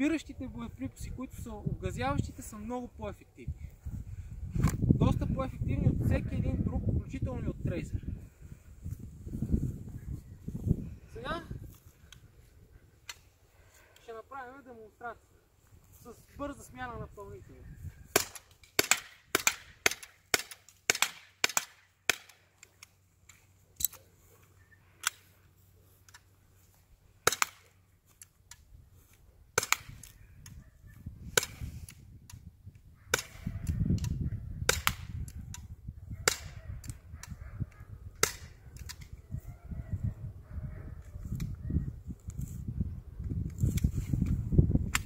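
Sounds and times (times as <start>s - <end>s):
paintball pistol shots: 18.1s - 22.4s, 27.2s - 27.7s, 29.6s - 30.1s, 33.1s - 35.4s, 36.2s - 36.9s, 38.2s - 39.0s.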